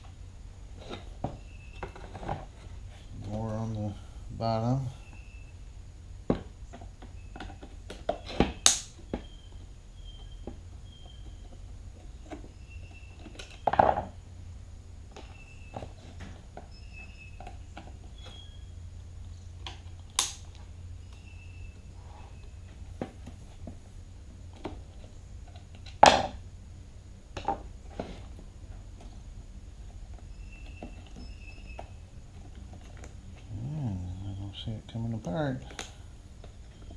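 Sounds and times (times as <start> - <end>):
steady low hum: 0.0 - 36.9.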